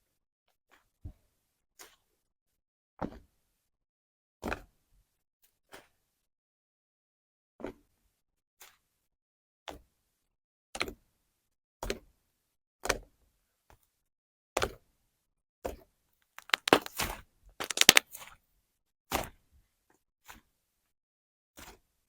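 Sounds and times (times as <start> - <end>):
slime squishing: 16.4 - 16.9, 17.6 - 18.0
small crackling pops: 16.4 - 17.0, 17.6 - 18.0.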